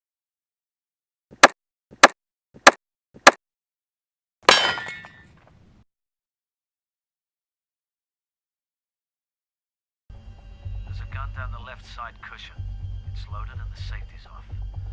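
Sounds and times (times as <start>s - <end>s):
ringing metallic clang: 4.4s - 5.4s.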